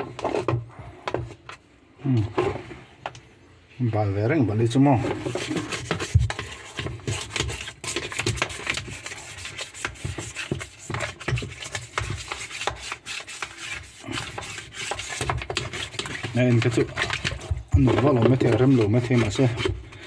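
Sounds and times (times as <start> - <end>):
scrubbing and rubbing: 4.5 - 20.0.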